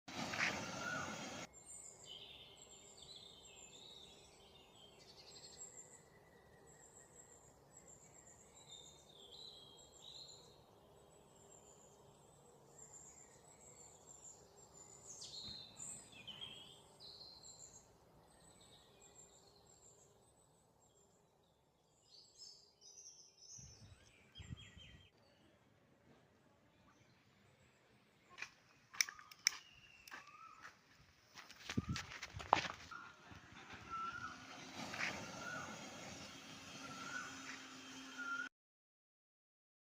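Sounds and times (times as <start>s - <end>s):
birds chirping: 0.1s - 20.2s, 26.7s - 38.5s.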